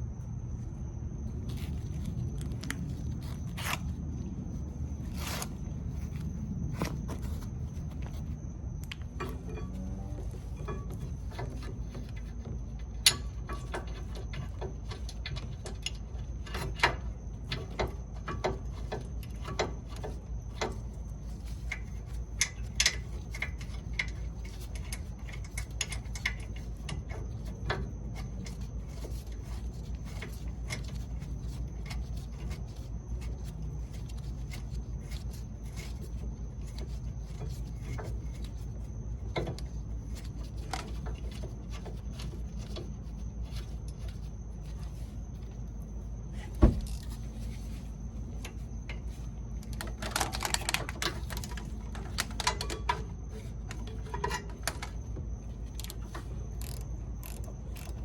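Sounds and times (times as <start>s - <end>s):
faint high whine: 0.0s - 16.6s
steady low hum: 0.0s - 58.0s
hand tools clicking and knocking: 48.9s - 55.0s.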